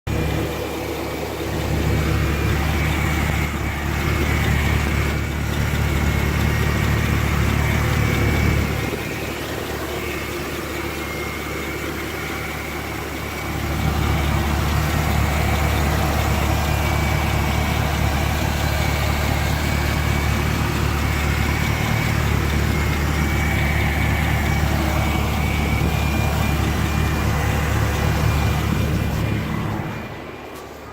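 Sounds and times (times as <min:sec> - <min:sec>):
car engine idling: 0:00.0 - 0:30.9
engine ticking rattle: 0:00.1 - 0:30.9.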